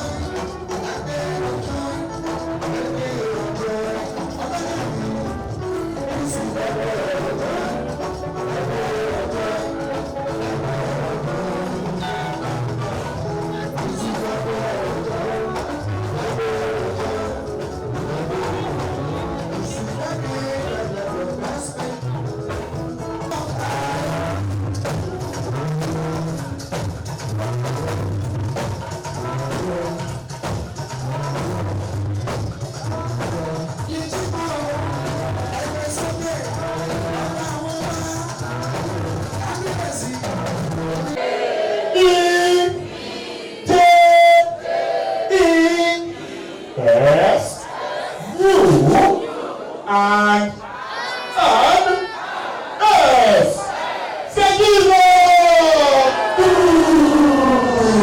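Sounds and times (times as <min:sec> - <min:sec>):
music with bass and drums: 0:00.0 - 0:41.2.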